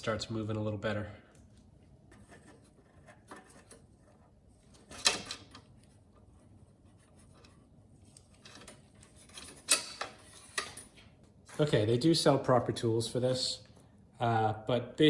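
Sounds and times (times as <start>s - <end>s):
handling noises on a cable: 1.4s - 11.7s.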